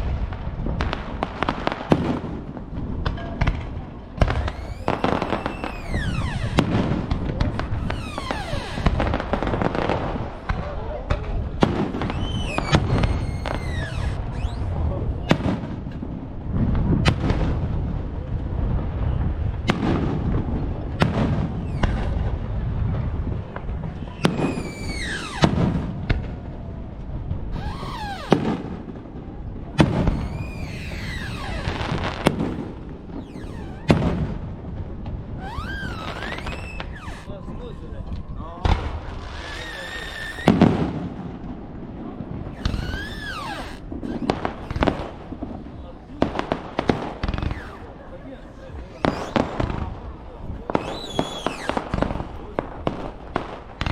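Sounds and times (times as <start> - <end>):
fireworks bursting: 0.0 - 17.6, 18.6 - 53.9
fireworks whistling: 4.2 - 10.0, 11.6 - 15.6, 21.0 - 22.5, 23.8 - 26.1, 27.5 - 29.0, 29.7 - 34.5, 35.4 - 37.8, 38.6 - 41.1, 42.5 - 45.6, 46.4 - 49.9, 50.7 - 53.9.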